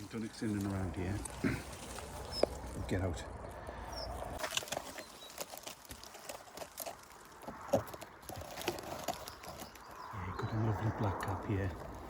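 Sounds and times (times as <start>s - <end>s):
twigs snapping: 4.1s - 10.0s
footsteps through brambles: 4.4s - 10.0s.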